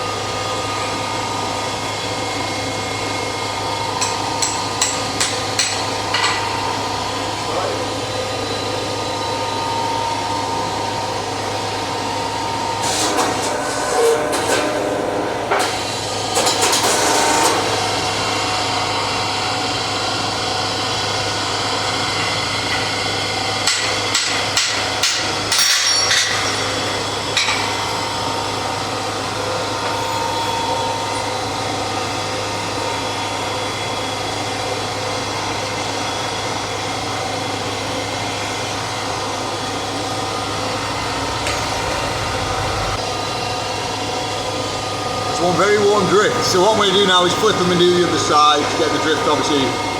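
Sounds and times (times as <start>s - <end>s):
steady machine hum: 0.0s - 49.9s
hammer striking hot steel: 4.0s - 6.6s, 23.6s - 28.0s.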